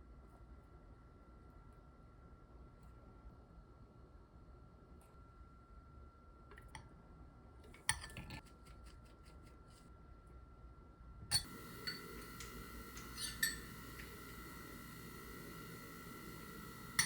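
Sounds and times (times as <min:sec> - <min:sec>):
faint steady hum: 0:00.0 - 0:17.0
dishes and utensils clinking: 0:11.3 - 0:14.2.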